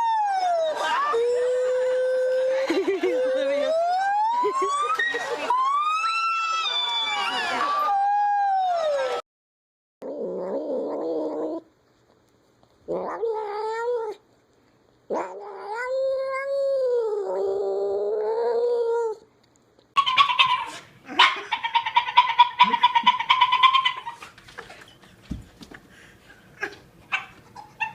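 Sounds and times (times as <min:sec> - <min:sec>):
cat yowling: 0:15.1 - 0:17.4.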